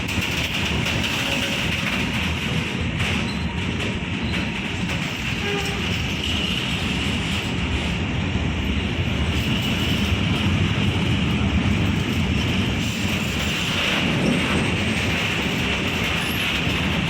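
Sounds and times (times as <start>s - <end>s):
train wheels rumbling on rails: 0.0s - 17.0s.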